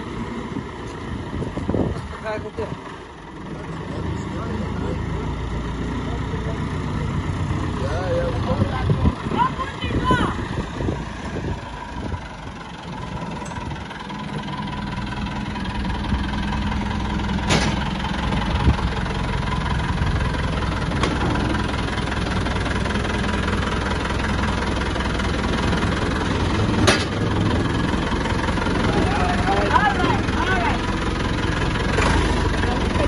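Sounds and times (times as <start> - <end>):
engine running: 0.0 - 33.0
sharp knocks: 17.4 - 17.9.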